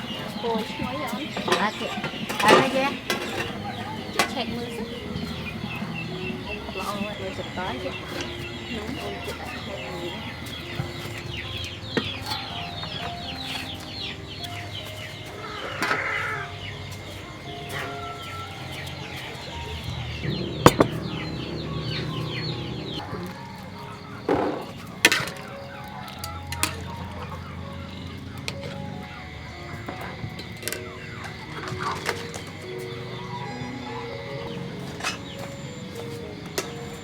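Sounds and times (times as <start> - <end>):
chickens clucking: 0.0 - 37.0
chicks peeping: 0.0 - 37.0
sharp knocks: 20.2 - 22.9.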